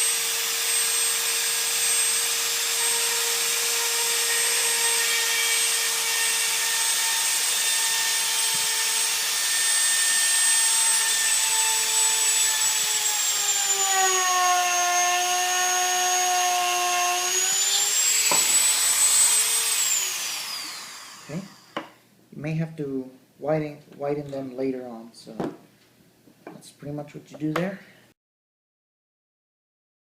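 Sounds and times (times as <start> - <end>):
electric drill whining: 0.0 - 21.9.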